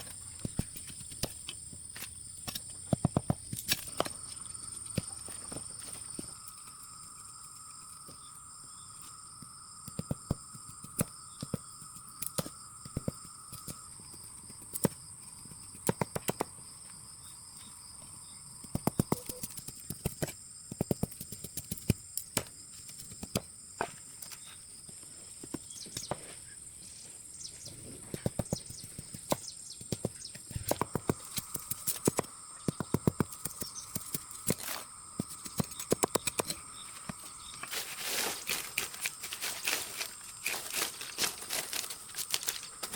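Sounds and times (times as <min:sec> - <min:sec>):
sharp taps and knocks: 0:15.8 - 0:16.5, 0:28.1 - 0:37.3.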